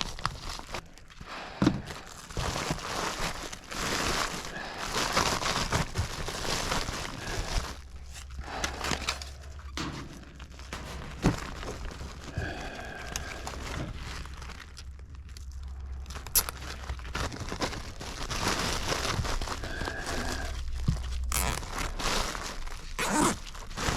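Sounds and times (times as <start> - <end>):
material crinkling and rustling: 0.0 - 23.9
low hum: 6.9 - 18.0.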